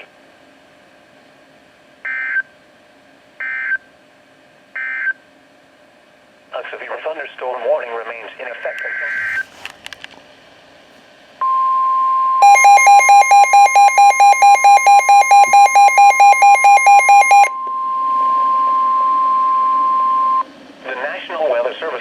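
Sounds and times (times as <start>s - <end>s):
steady high alarm tone: 11.4s - 20.4s
pulsing alert beeps: 12.4s - 17.5s.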